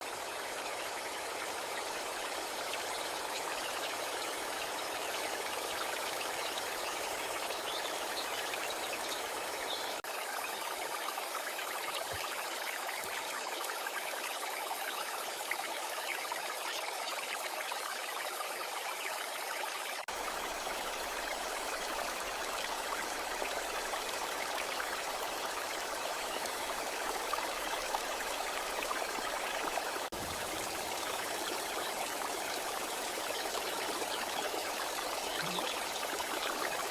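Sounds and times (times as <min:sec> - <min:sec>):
steady rain falling: 0:20.1 - 0:36.9.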